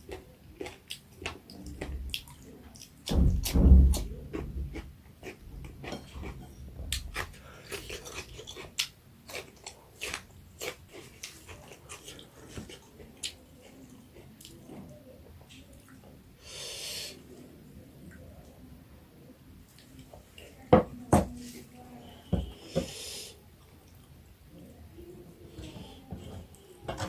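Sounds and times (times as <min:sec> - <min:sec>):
wet chewing and smacking: 0:00.0 - 0:16.1.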